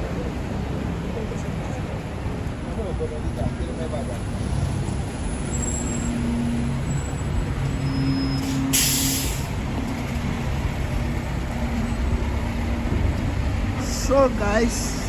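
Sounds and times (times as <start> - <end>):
heavy vehicle engine humming: 0.0 - 15.0
street traffic: 0.0 - 15.0
air brake hiss: 8.4 - 9.5.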